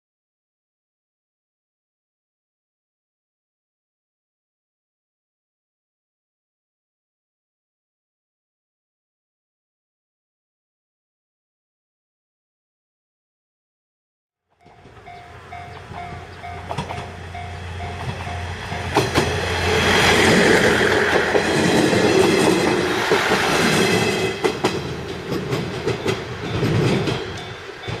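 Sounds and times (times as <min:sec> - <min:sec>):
crossing warning bell dinging: 0:14.6 - 0:28.0
diesel railcar rumble: 0:14.6 - 0:28.0
train wheels clicking over rail joints: 0:14.6 - 0:28.0.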